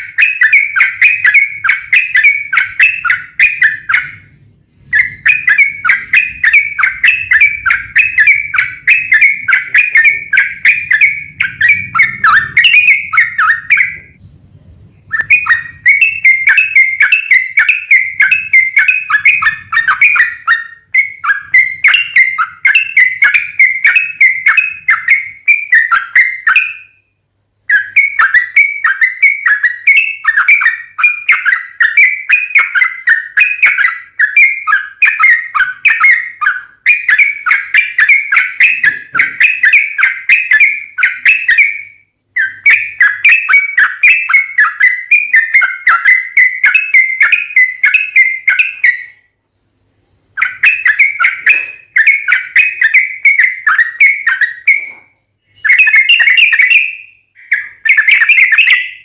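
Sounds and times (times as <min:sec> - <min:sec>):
bird singing bubbling notes: 0:00.0 - 0:27.1, 0:50.3 - 0:59.0.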